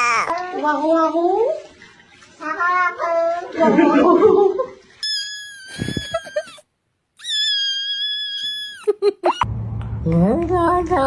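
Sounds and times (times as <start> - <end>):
cat rising squeaks: 5.0 - 6.6, 7.2 - 9.5
cat squealing: 5.0 - 6.6, 7.2 - 9.5.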